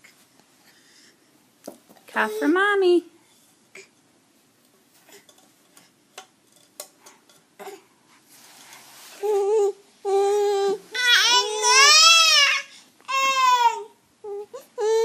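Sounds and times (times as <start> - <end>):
baby crying: 9.2 - 15.0.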